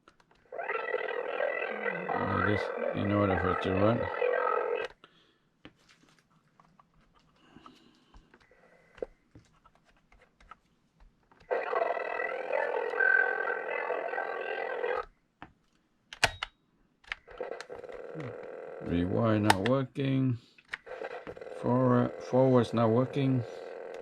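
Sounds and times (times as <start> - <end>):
tape playback through small speaker: 0.0 - 5.0, 11.4 - 15.2, 17.1 - 24.0.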